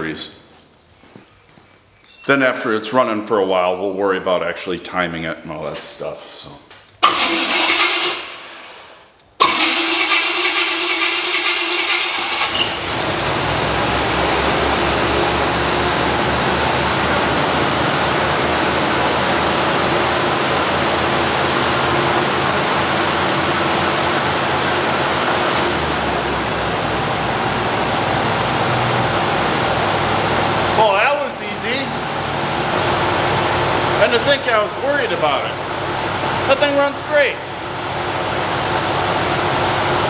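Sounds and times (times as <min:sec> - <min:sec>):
starter motor cranking: 0:07.0 - 0:08.8, 0:09.4 - 0:26.5
engine idling: 0:09.4 - 0:40.0.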